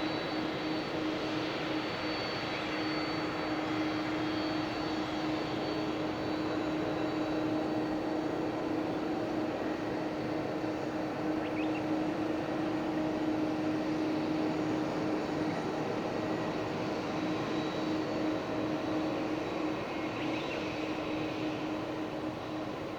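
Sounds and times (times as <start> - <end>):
jet engines running: 0.0 - 22.9.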